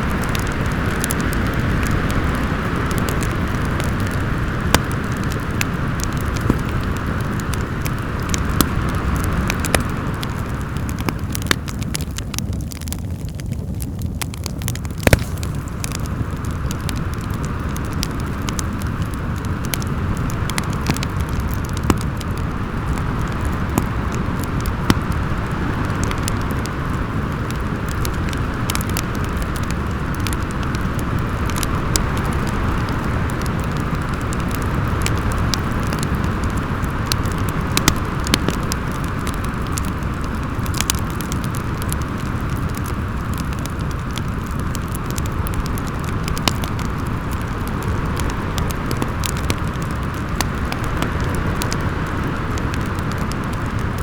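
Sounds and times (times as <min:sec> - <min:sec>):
wind rumbling and howling: 0:00.0 - 0:54.0
wood fire crackling and popping: 0:00.0 - 0:54.0.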